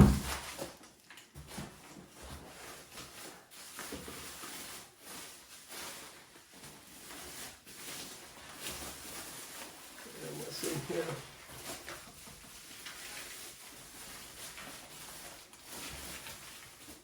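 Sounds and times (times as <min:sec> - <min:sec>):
boxes knocking while handled: 0:00.0 - 0:00.6
packing material rustling: 0:00.0 - 0:17.0.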